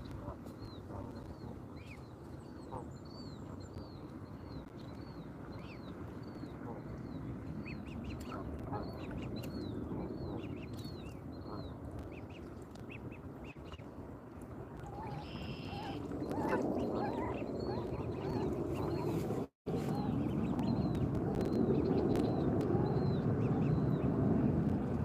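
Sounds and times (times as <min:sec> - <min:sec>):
birds calling: 0:14.9 - 0:21.0.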